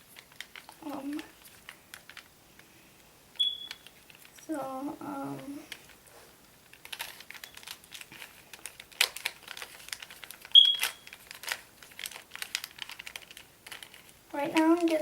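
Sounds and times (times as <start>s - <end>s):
short high beep: 3.4s - 3.8s, 10.6s - 11.0s.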